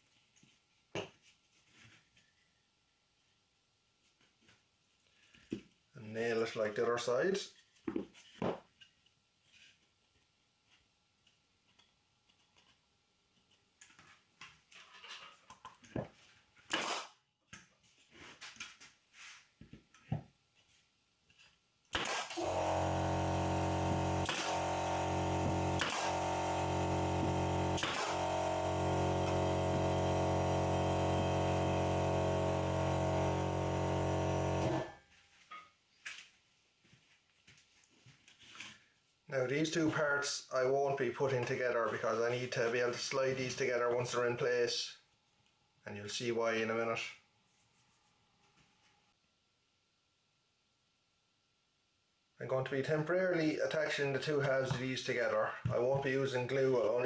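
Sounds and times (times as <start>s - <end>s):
machine motor running: 22.3s - 34.9s.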